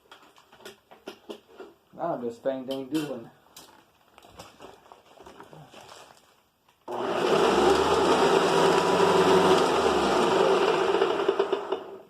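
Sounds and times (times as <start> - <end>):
vacuum cleaner motor hum: 6.9 - 12.0.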